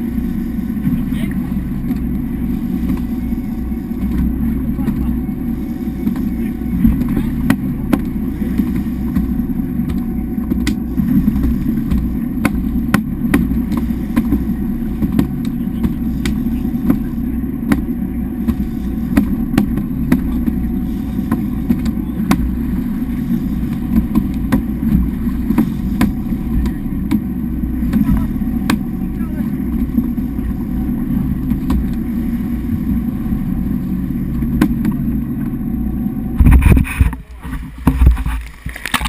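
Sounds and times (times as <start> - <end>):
boat engine running: 0.0 - 39.0
sharp knocks and clicks: 6.0 - 20.6, 21.2 - 22.6, 23.7 - 27.3, 27.9 - 28.9, 31.4 - 32.0, 34.3 - 35.5.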